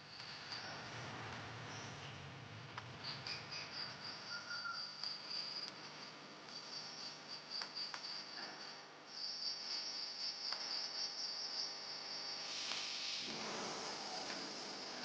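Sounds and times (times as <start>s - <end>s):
insects trilling: 3.0s - 15.0s.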